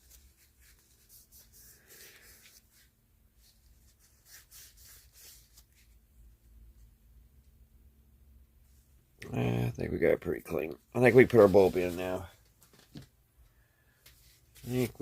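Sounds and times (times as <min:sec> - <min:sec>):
scratchy rubbing on metal: 0:03.9 - 0:05.9.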